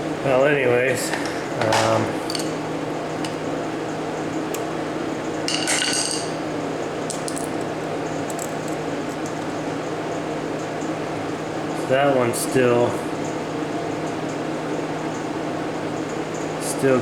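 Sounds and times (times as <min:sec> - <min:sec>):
steady low hum: 0:00.0 - 0:17.0
small metal parts clinking: 0:01.2 - 0:02.6, 0:05.5 - 0:06.4, 0:07.1 - 0:09.6
ringing metal clink: 0:05.5 - 0:06.4.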